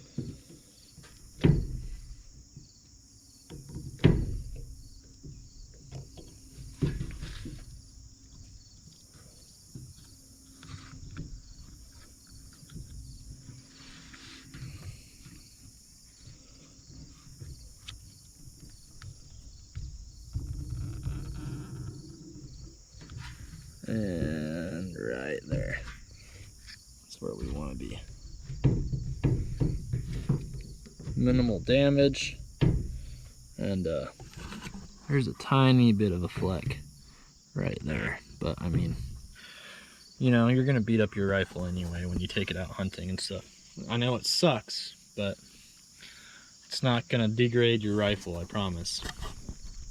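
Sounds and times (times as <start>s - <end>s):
heavy handling knocks: 0.0s - 2.8s, 3.4s - 24.8s, 27.4s - 37.2s
high insect chorus: 0.0s - 49.9s
small clicks and rubbing: 34.2s - 35.2s, 47.9s - 49.9s.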